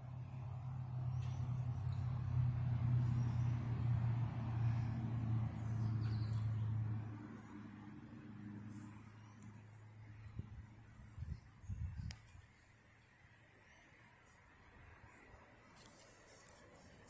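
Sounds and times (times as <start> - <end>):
engine hum: 0.0 - 12.4.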